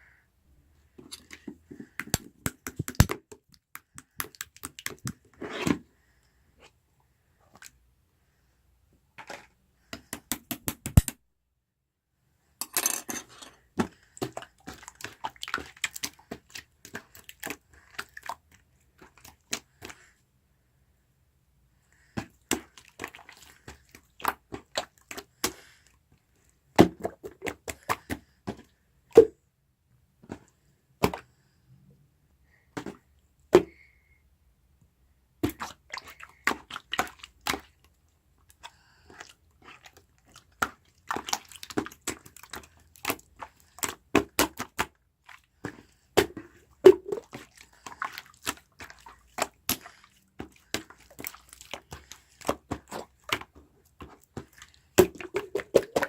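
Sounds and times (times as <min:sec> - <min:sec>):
sharp clicks and taps: 0:02.0 - 0:05.2, 0:10.0 - 0:11.2.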